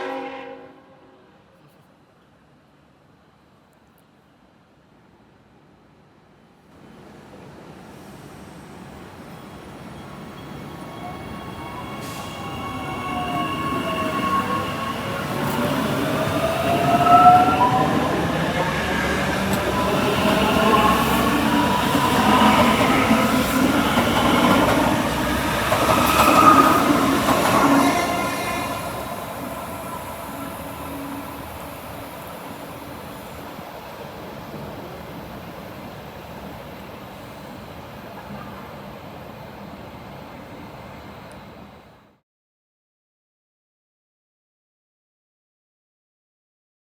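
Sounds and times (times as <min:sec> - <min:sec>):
wheel and rail noise: 0:08.8 - 0:41.9
electric train motors whining: 0:11.0 - 0:32.4.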